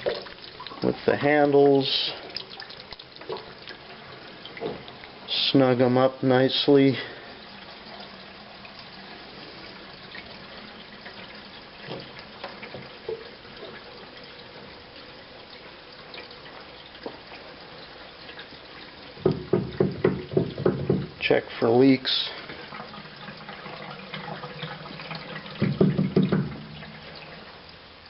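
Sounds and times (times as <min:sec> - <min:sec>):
water hissing in plumbing: 0:00.0 - 0:28.0
loud pipe knocks: 0:19.2 - 0:21.2, 0:25.6 - 0:26.7.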